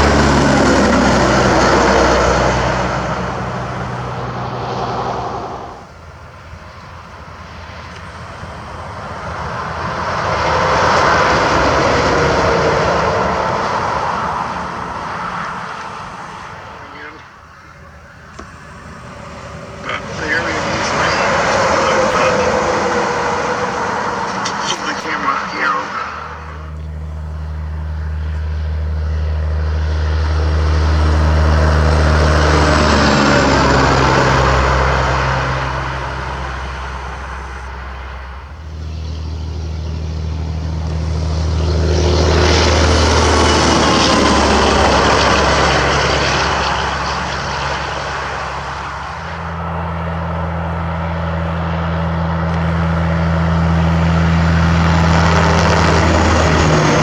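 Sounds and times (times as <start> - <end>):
trucks driving past: 0.0 - 57.0.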